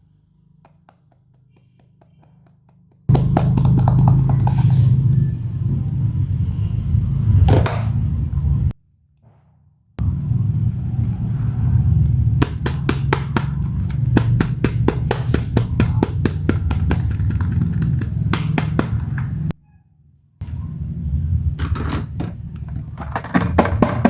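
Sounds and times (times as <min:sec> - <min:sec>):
toys clicking and tapping: 0:00.7 - 0:04.9, 0:12.4 - 0:19.5
low rumble of handling noise: 0:10.0 - 0:19.6, 0:20.4 - 0:24.0.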